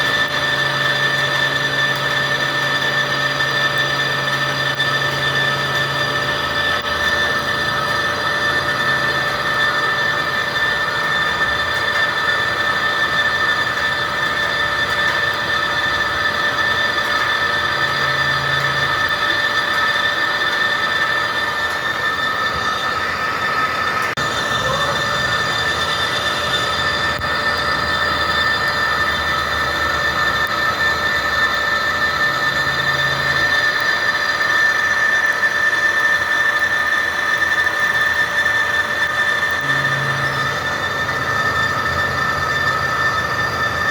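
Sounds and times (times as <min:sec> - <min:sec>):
lathe cutting tool squealing: 0:00.0 - 0:43.9
lathe machine running: 0:00.0 - 0:43.9.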